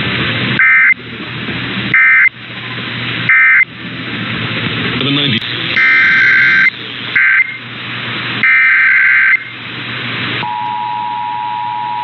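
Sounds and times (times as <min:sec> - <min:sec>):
radio hiss: 0:04.6 - 0:10.4
warbling digital data bursts: 0:05.4 - 0:07.6
two-tone alert signal: 0:05.8 - 0:07.6.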